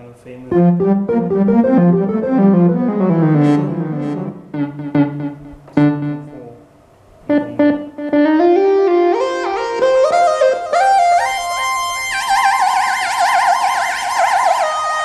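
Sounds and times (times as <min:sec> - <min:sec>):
synthesizer piano notes and chords: 0:00.5 - 0:06.5.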